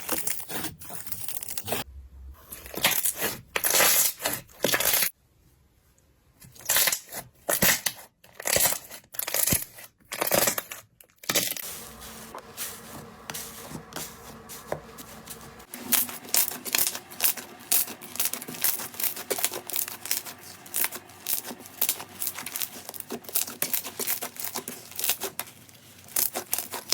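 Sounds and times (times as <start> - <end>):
slime crackling: 11.6 - 26.9.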